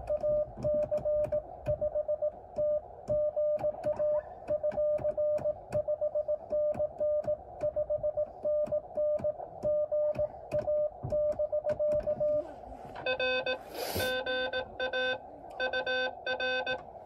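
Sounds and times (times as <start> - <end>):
morse code beeps: 0.0 - 12.4, 13.0 - 16.9
radio hiss: 13.6 - 14.3.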